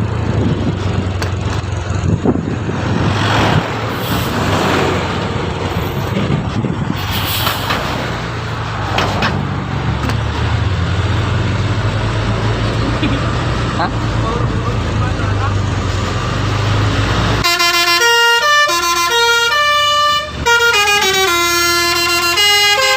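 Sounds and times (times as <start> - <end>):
bus engine running: 0.0 - 22.9
road traffic: 0.0 - 22.9
broad rushes of noise: 1.8 - 17.4.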